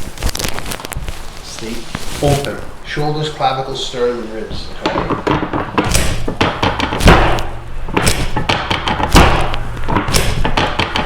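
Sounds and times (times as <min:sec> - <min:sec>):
dull thumps: 0:04.4 - 0:11.0.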